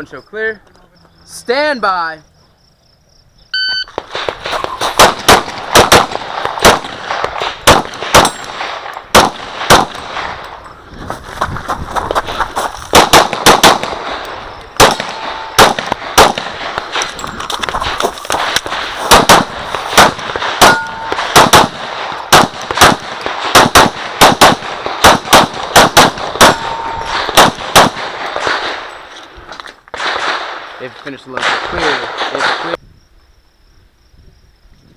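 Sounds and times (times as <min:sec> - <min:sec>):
pistol shots: 0:03.9 - 0:10.4, 0:12.9 - 0:17.2, 0:17.8 - 0:28.9, 0:29.9 - 0:30.7, 0:31.3 - 0:32.8
steel targets ringing: 0:20.5 - 0:21.5, 0:26.4 - 0:27.4.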